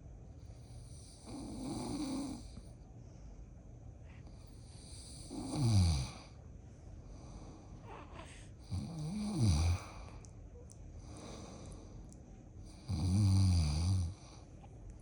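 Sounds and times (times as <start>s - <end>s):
man snoring loudly: 1.0s - 2.4s, 4.8s - 6.2s, 8.6s - 9.9s, 12.7s - 14.3s.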